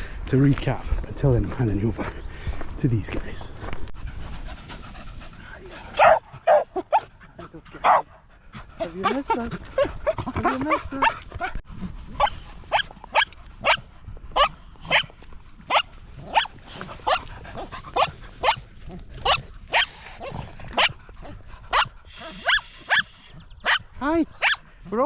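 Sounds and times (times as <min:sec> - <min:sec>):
dog yapping: 0:06.0 - 0:07.1, 0:14.4 - 0:15.1, 0:15.7 - 0:17.2, 0:18.0 - 0:18.6, 0:21.7 - 0:24.6.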